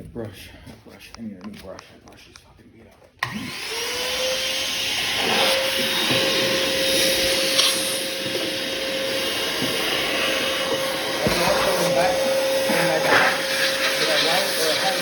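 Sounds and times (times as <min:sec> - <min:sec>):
vacuum cleaner running: 0:03.2 - 0:15.0.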